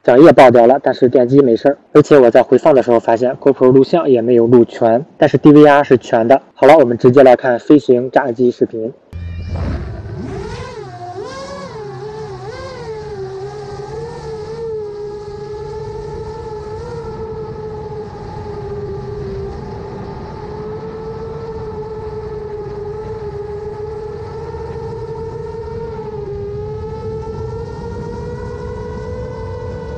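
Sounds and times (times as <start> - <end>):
drone motors whining: 9.1 - 29.9.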